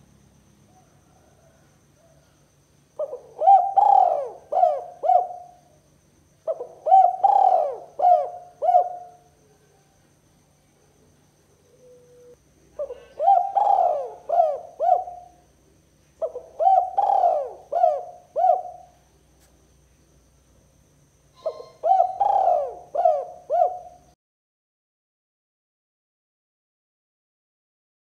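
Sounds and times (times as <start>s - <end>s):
dove cooing: 3.0s - 5.7s, 6.4s - 9.9s, 11.6s - 15.4s, 16.2s - 19.0s, 21.4s - 24.2s.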